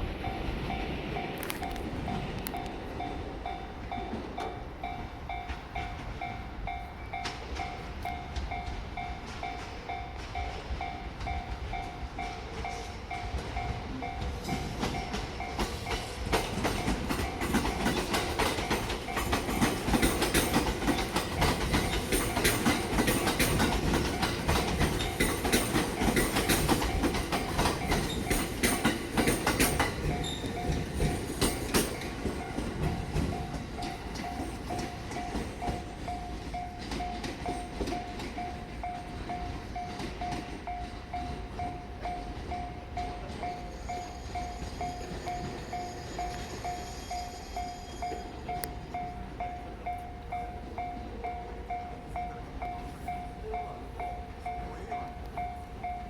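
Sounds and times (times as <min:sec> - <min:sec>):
train wheels clacking over rails: 0:00.0 - 0:56.0
level-crossing bell ringing: 0:16.8 - 0:56.0.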